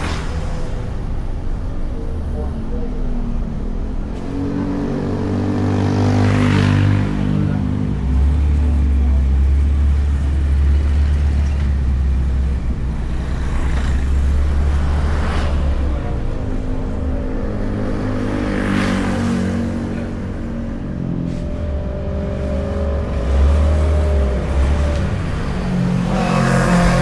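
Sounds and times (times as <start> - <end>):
scooter engine running: 22.7 - 27.0.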